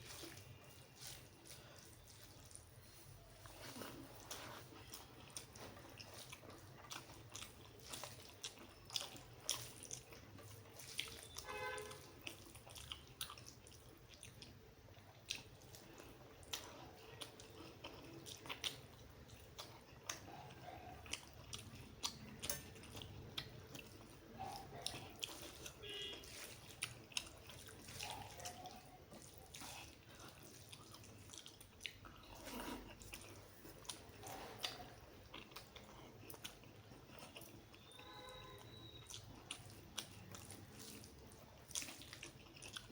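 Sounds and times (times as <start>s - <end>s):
wet chewing and mouth smacking: 0.0s - 42.9s.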